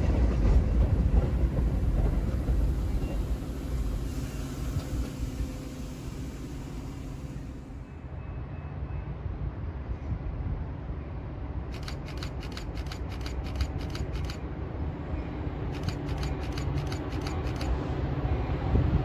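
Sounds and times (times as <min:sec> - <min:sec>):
train rumble: 0:00.0 - 0:19.0
rapid even clicking: 0:11.7 - 0:14.4, 0:15.8 - 0:17.8.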